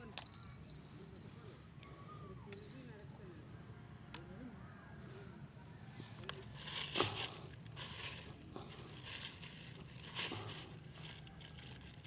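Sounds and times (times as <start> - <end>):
rustling and crinkling: 6.2 - 12.0.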